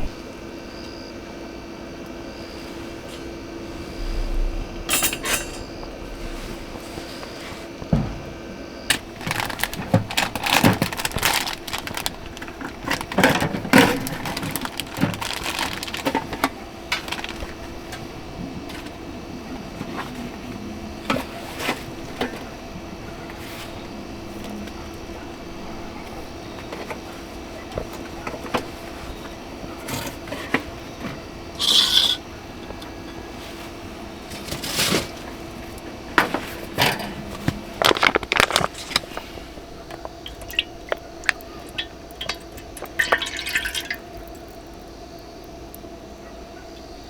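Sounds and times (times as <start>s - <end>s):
steady low hum: 0.0s - 47.0s
pots and utensils clinking: 4.8s - 5.8s, 8.9s - 18.1s, 31.6s - 32.2s, 36.2s - 44.1s
liquid pouring and dripping: 40.0s - 44.6s.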